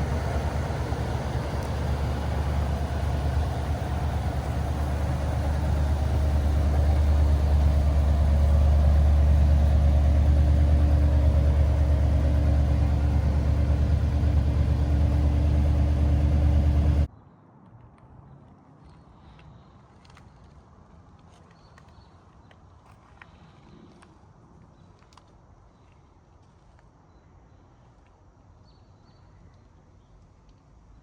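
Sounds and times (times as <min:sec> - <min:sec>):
engine deep low drone: 0:00.0 - 0:17.1.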